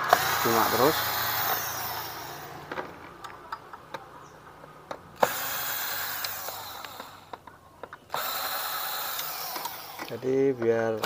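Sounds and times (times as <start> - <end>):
power drill driver running: 0.0 - 2.9, 5.2 - 7.4, 8.0 - 11.0
sharp metal clicks and taps: 6.2 - 8.2, 9.1 - 11.0.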